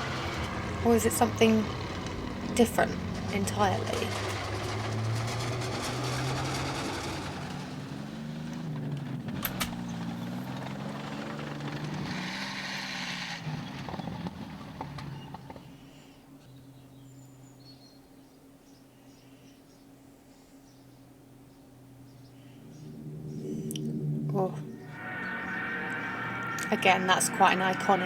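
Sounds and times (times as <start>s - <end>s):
heavy vehicle engine running: 0.0s - 16.2s, 21.8s - 28.0s.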